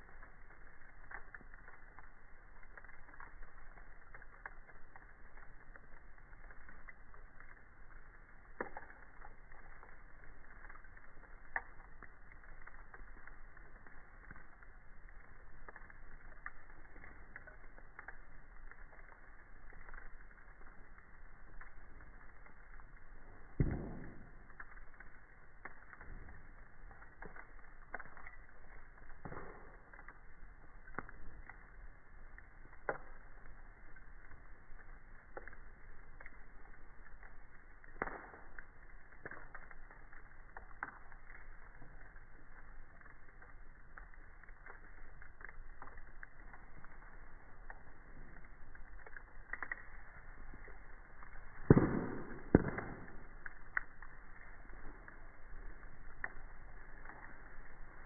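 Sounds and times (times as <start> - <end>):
campfire crackling: 0.0 - 58.0
fire popping: 0.0 - 58.0
sharp fire pop: 8.4 - 9.8, 23.2 - 31.6, 36.2 - 39.8, 45.8 - 57.5.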